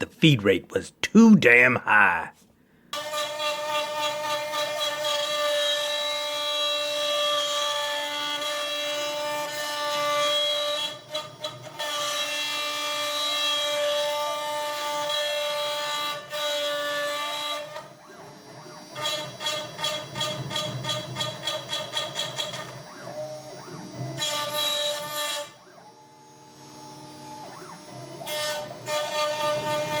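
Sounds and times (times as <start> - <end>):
router high-pitched cutting whine: 3.0 - 30.0.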